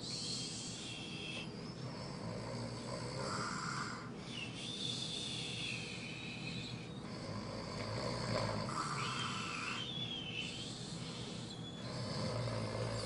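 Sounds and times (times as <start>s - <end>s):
toddler fake snoring: 1.8s - 4.1s, 7.1s - 9.8s, 11.8s - 13.0s.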